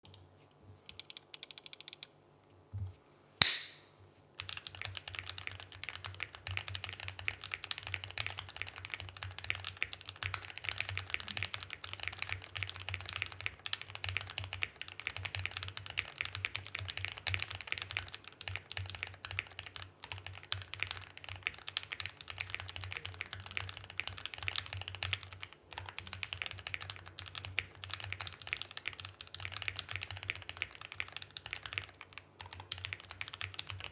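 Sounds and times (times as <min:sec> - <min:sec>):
loud sharp click: 0:03.4 - 0:03.9
fast typing on mechanical keyboard: 0:04.4 - 0:33.9.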